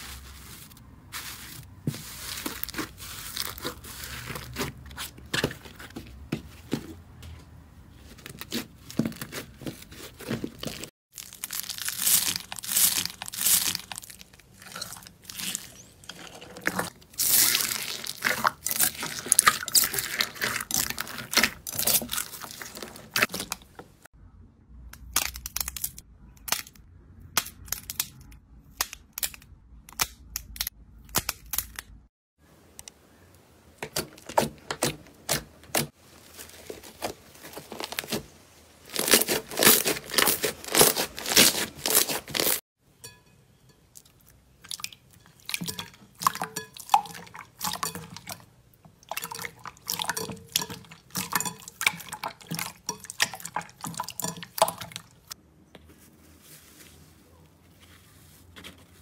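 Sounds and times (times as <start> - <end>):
slime crackling and popping: 11.1 - 15.6.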